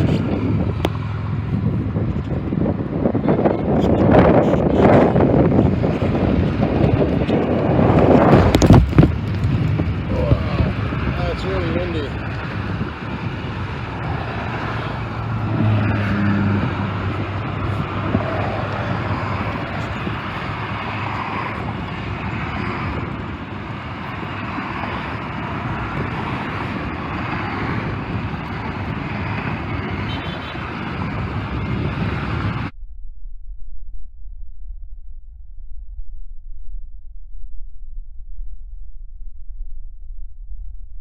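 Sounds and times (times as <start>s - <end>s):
road traffic going past: 0.0s - 32.7s
low steady tone: 32.7s - 41.0s.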